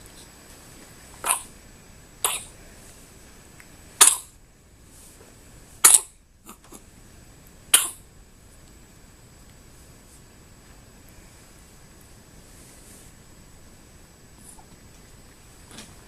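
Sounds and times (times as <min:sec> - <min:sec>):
person sneezing: 0:02.2 - 0:02.6, 0:04.0 - 0:04.3, 0:05.8 - 0:06.8, 0:07.8 - 0:08.0.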